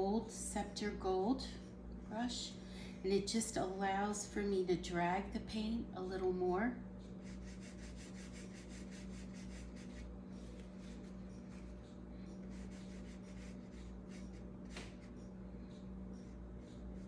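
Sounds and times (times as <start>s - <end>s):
steady low hum: 0.0s - 17.0s
brush stroking paint on paper: 7.2s - 15.3s.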